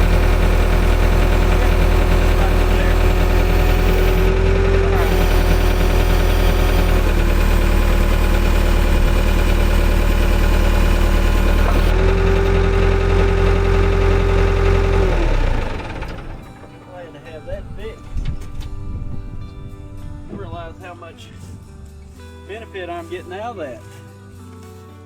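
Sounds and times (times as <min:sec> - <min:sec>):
hydraulic whine: 0:00.0 - 0:19.0
diesel engine running: 0:00.0 - 0:20.8.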